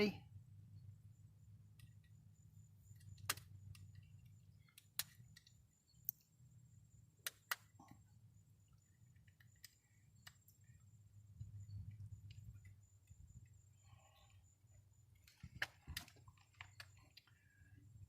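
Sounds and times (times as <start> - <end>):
low steady hum: 0.0 - 18.0
faint plastic clicks: 15.2 - 17.7.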